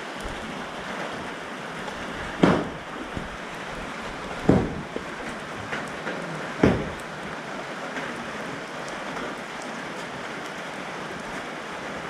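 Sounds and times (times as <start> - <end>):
steady rain: 0.0 - 12.0
low thump: 4.4 - 4.9, 6.6 - 7.0.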